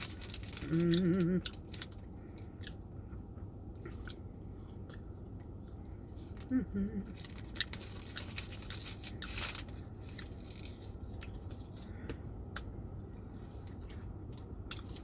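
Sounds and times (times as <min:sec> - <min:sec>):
crunchy rustle: 0:00.0 - 0:02.7, 0:06.0 - 0:12.1
low steady hum: 0:00.0 - 0:15.0
person chewing food: 0:00.0 - 0:15.0.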